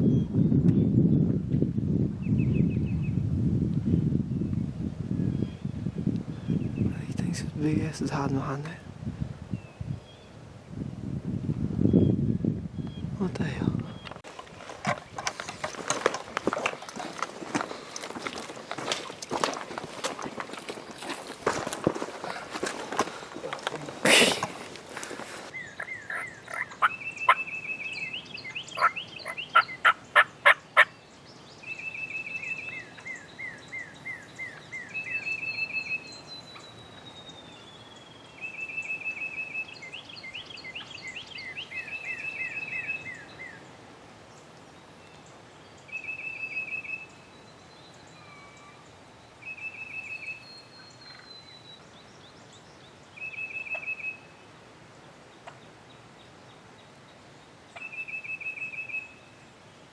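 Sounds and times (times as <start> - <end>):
songbirds trilling: 5.2 - 8.8, 11.9 - 59.9
turkey calls: 22.2 - 30.9.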